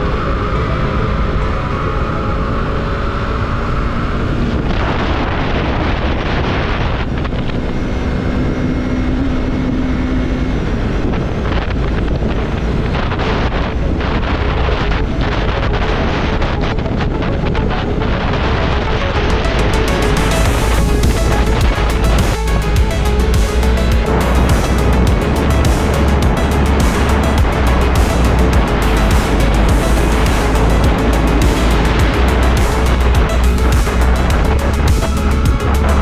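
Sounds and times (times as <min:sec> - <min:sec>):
motorcycle engine running: 0:19.8 - 0:36.0.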